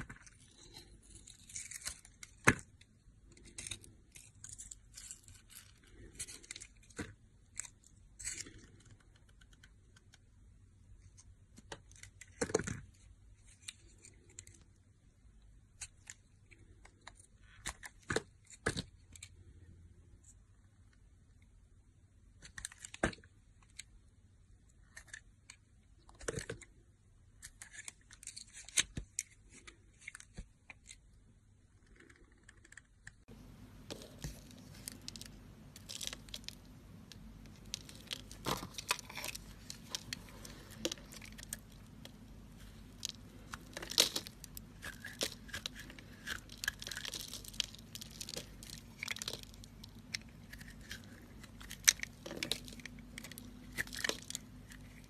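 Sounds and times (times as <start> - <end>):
crisp tearing and crunching crackles: 0.0 - 2.6, 3.3 - 9.2, 33.3 - 55.0.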